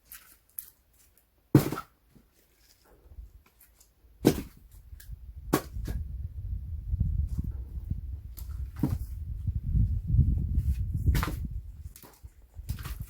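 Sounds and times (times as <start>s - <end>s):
axe chopping firewood: 1.5s - 2.0s, 4.2s - 4.7s, 5.4s - 6.0s, 8.4s - 9.1s, 11.0s - 13.0s.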